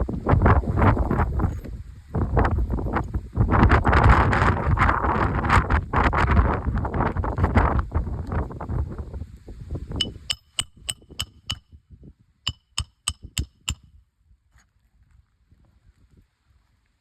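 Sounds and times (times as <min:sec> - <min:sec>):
wind on microphone: 0:00.0 - 0:12.4
hammer tapping roofing nails: 0:10.0 - 0:11.6, 0:12.5 - 0:13.8.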